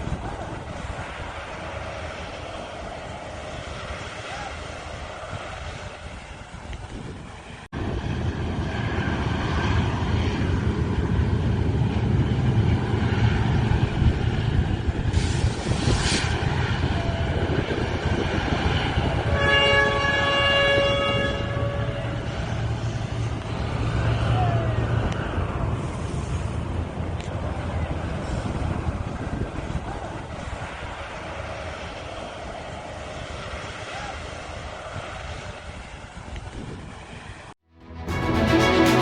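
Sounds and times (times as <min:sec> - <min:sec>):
train rumbling over bridge: 0:00.0 - 0:08.6, 0:10.0 - 0:36.2, 0:37.8 - 0:39.0
train horn: 0:19.2 - 0:22.4, 0:37.8 - 0:39.0.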